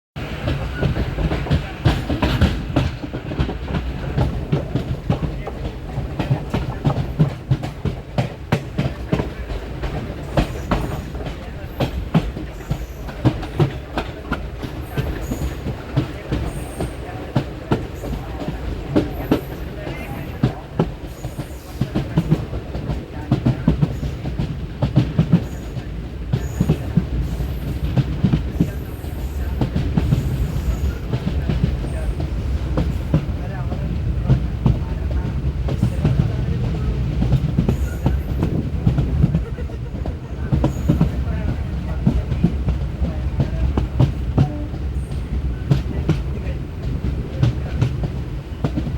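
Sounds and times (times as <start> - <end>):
low train rumble: 0.2 - 48.9
train wheels clacking: 0.2 - 48.9.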